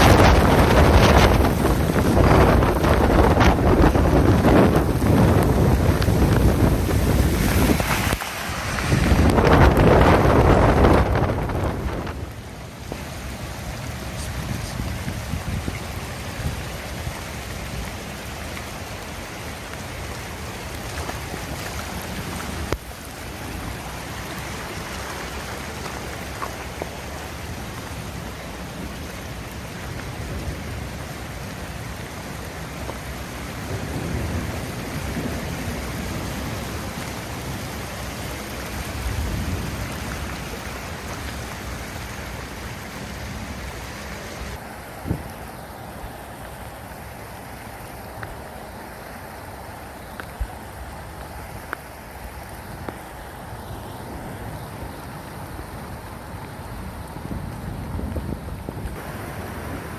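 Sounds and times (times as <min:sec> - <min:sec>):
wind buffeting the microphone: 0:00.0 - 0:18.0, 0:54.0 - 0:59.9
heavy rain falling: 0:00.0 - 0:59.9.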